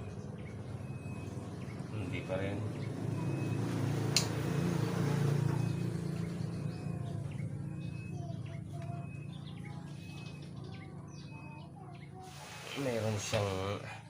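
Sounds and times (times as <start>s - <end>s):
birds chirping: 0.0s - 14.0s
sharp click: 4.1s - 4.4s.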